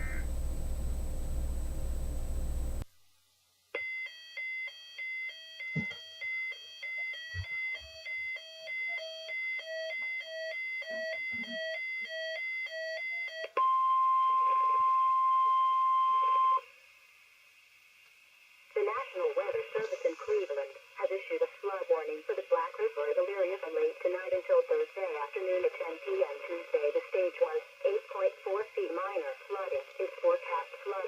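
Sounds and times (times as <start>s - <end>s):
steady warning alarm tone: 0.0s - 2.8s, 4.0s - 13.5s
high alternating alarm beeps: 3.8s - 14.2s.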